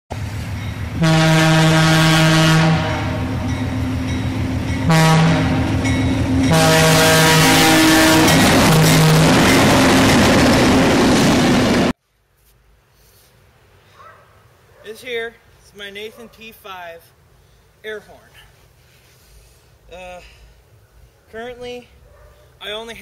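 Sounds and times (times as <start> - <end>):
air horn chord blasts: 1.0 - 3.4, 4.9 - 5.7, 6.5 - 9.4.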